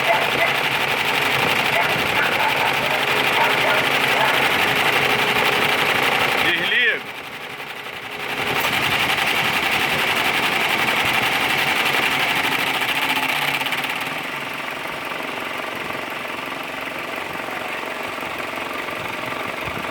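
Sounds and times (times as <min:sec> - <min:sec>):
cooling fan rattling: 0:00.0 - 0:19.9.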